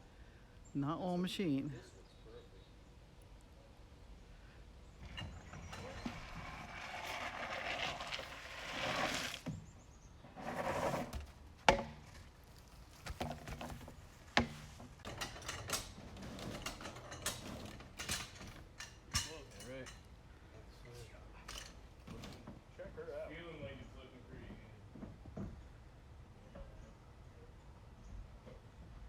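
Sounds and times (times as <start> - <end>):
clicks and creaks: 5.0 - 9.4
greenhouse scraping across pad: 5.0 - 14.9
sharp knocks: 11.1 - 12.2.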